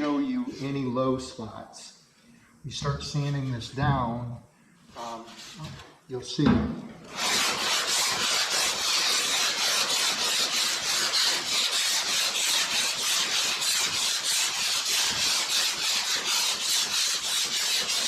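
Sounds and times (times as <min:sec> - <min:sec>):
sanding block rasping on primer: 0:07.1 - 0:18.0.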